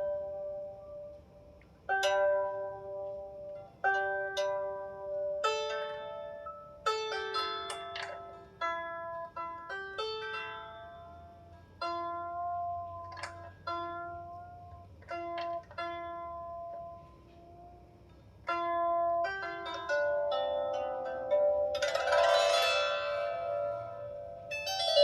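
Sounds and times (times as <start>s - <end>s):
lyre harp plucked: 1.9s - 11.2s, 18.5s - 25.0s.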